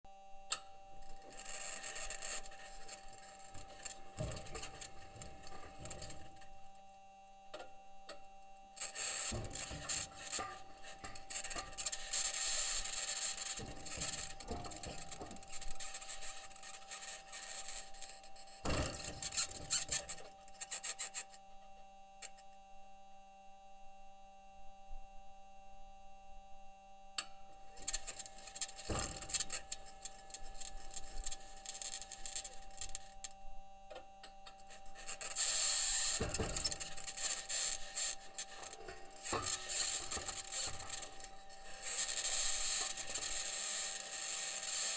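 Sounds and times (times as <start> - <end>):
metal wheels crunching over rock: 1.1 - 6.5, 8.9 - 17.5, 27.8 - 33.1, 34.6 - 44.9
high squeak-like tone: 8.8 - 21.4, 34.5 - 44.9.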